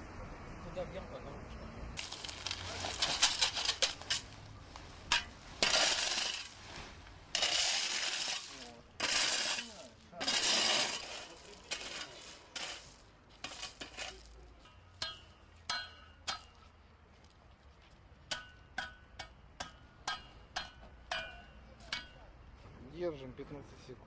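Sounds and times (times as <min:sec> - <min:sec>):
metal tool clanking on asphalt: 0:02.0 - 0:04.4, 0:05.0 - 0:16.8, 0:18.2 - 0:22.5
metal tool scraping asphalt: 0:02.0 - 0:16.4.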